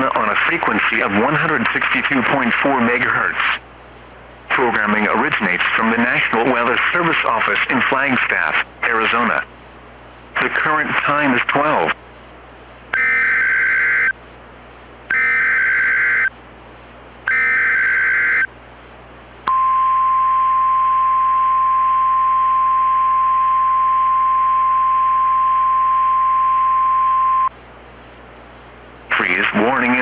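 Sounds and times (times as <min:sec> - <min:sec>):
steady warning alarm tone: 0:12.9 - 0:14.2, 0:15.1 - 0:16.3, 0:17.3 - 0:18.5, 0:19.5 - 0:27.5
screeching digital data bursts: 0:15.1 - 0:16.3, 0:17.3 - 0:18.5.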